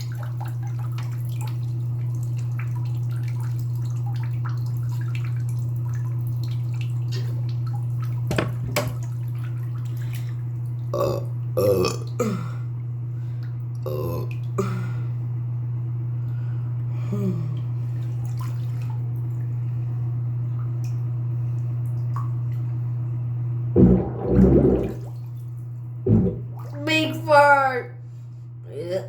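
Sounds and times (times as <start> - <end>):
steady low hum: 0.0 - 29.0
person burping: 10.9 - 12.6, 13.8 - 14.8.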